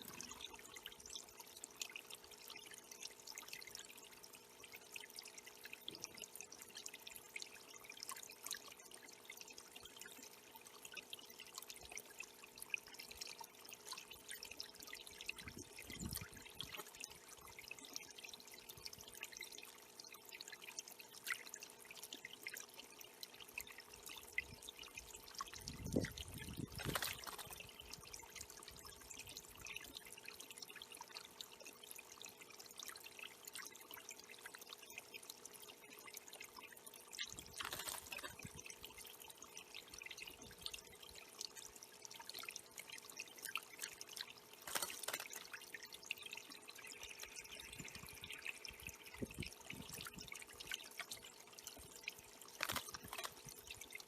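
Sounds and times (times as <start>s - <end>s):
faint steady hum: 0.0s - 54.0s
water trickling and dripping: 0.0s - 54.0s
water splashing: 26.6s - 27.9s, 37.4s - 38.6s, 43.7s - 45.6s.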